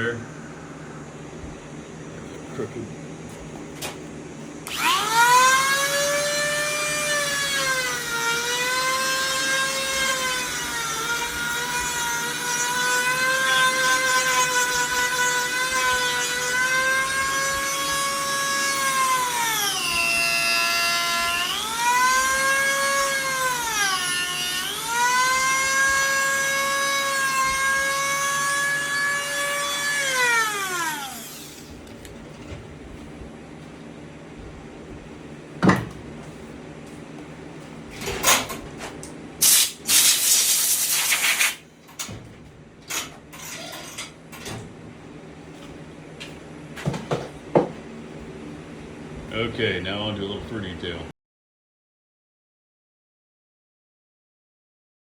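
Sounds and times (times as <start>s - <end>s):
rotary tool carving wood: 4.7s - 31.9s.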